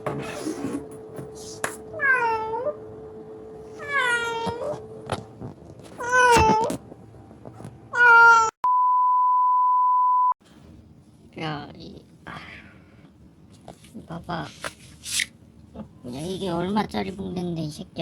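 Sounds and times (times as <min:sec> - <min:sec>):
cat meowing: 0:02.0 - 0:02.8, 0:03.7 - 0:04.8, 0:06.0 - 0:06.8, 0:08.0 - 0:08.6.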